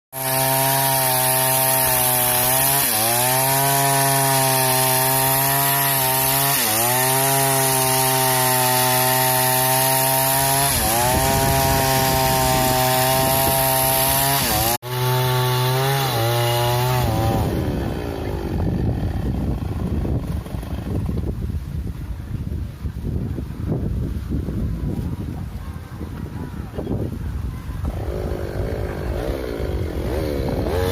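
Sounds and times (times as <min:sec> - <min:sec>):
chainsaw sawing through log: 0:00.1 - 0:21.4, 0:27.8 - 0:30.9
rough wind-like noise: 0:07.2 - 0:30.9.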